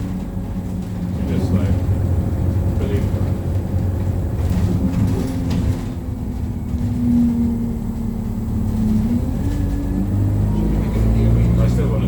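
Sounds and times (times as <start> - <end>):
bus engine and road rumble: 0.0 - 12.0.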